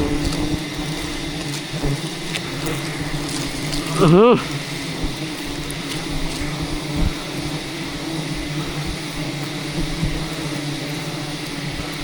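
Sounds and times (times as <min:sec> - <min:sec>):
swarm of bees humming: 0:00.0 - 0:12.0.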